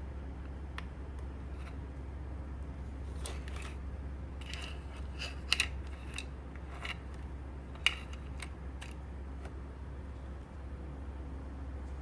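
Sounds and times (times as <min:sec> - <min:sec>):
steady low hum: 0:00.0 - 0:12.0
plastic clicks and scraping: 0:03.1 - 0:03.8, 0:04.4 - 0:09.6.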